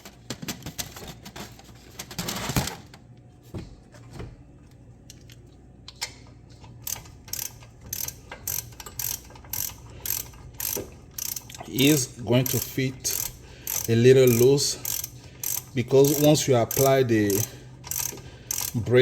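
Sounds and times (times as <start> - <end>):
ratchet wrench clicking: 6.8 - 19.0.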